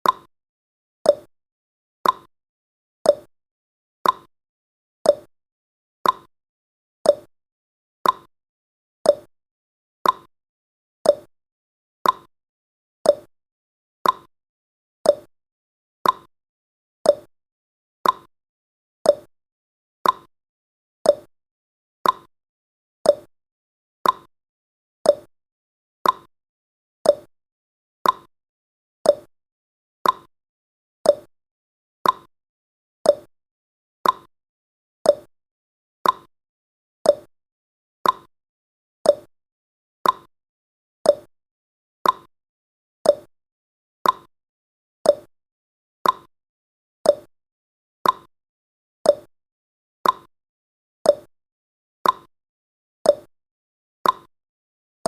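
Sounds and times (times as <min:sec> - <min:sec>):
clock tick-tock: 0:00.0 - 0:00.3, 0:01.1 - 0:01.3, 0:02.0 - 0:02.3, 0:03.1 - 0:03.3, 0:04.0 - 0:04.3, 0:05.1 - 0:05.3, 0:06.0 - 0:06.3, 0:07.1 - 0:07.3, 0:08.0 - 0:08.3, 0:09.1 - 0:09.3, 0:10.0 - 0:10.3, 0:11.0 - 0:11.3, 0:12.0 - 0:12.3, 0:13.1 - 0:13.3, 0:14.0 - 0:14.3, 0:15.0 - 0:15.3, 0:16.0 - 0:16.3, 0:17.0 - 0:17.3, 0:18.0 - 0:18.3, 0:19.0 - 0:19.3, 0:20.0 - 0:20.3, 0:21.0 - 0:21.3, 0:22.0 - 0:22.3, 0:23.0 - 0:23.3, 0:24.0 - 0:24.3, 0:25.0 - 0:25.3, 0:26.0 - 0:26.3, 0:27.0 - 0:27.3, 0:28.0 - 0:28.3, 0:29.0 - 0:29.3, 0:30.0 - 0:30.3, 0:31.0 - 0:31.3, 0:32.0 - 0:32.3, 0:33.0 - 0:33.3, 0:34.0 - 0:34.3, 0:35.0 - 0:35.3, 0:36.0 - 0:36.3, 0:37.0 - 0:37.3, 0:38.0 - 0:38.3, 0:39.0 - 0:39.3, 0:40.0 - 0:40.3, 0:41.0 - 0:41.3, 0:42.0 - 0:42.3, 0:43.0 - 0:43.3, 0:44.0 - 0:44.3, 0:45.0 - 0:45.3, 0:46.0 - 0:46.3, 0:47.0 - 0:47.3, 0:48.0 - 0:48.3, 0:49.0 - 0:49.3, 0:50.0 - 0:50.3, 0:51.1 - 0:51.3, 0:52.0 - 0:52.3, 0:53.1 - 0:53.3, 0:54.0 - 0:54.3.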